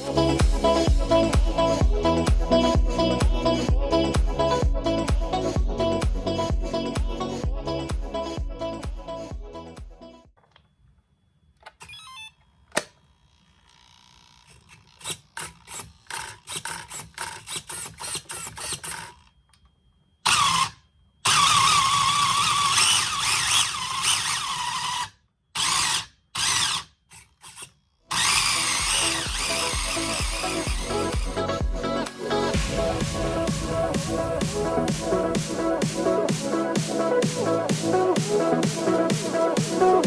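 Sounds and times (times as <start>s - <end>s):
small electric motor whining: 20.3s - 31.5s.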